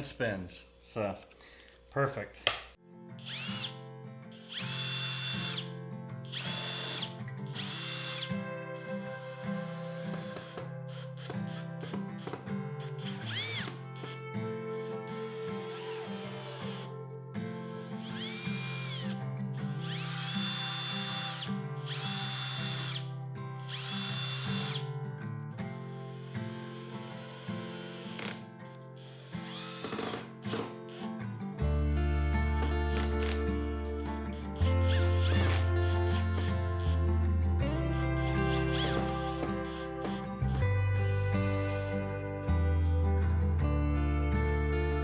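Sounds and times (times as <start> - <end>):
acoustic guitar music: 2.7 - 45.0
power drill whine: 3.2 - 5.7, 6.3 - 24.9, 25.7 - 31.2, 32.6 - 37.1, 38.3 - 42.2.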